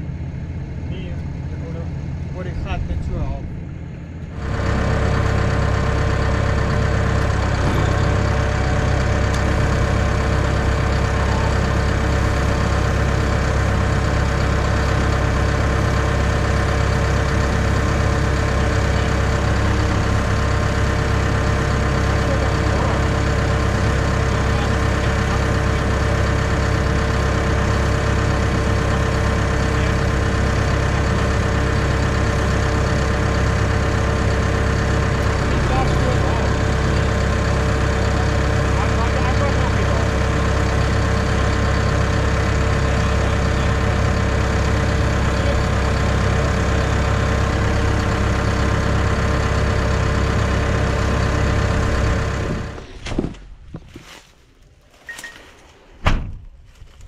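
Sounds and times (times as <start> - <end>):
excavator diesel engine drone: 0.0 - 53.0
steady engine whine: 0.0 - 53.3.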